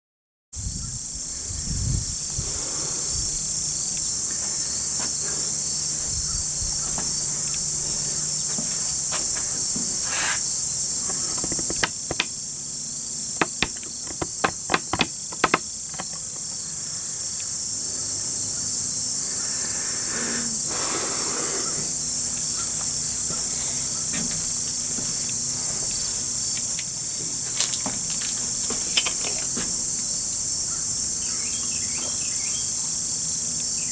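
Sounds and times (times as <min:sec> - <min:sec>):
insects chirping: 0:00.6 - 0:33.9
sharp clicks: 0:11.2 - 0:12.4, 0:13.4 - 0:16.2.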